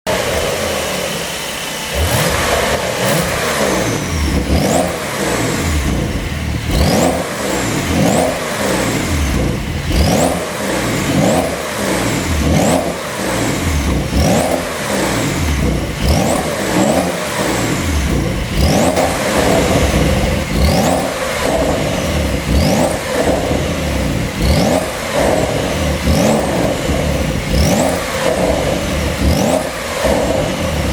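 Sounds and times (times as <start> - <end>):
car engine revving: 0.0 - 30.9
exhaust pops and crackles: 7.9 - 30.9.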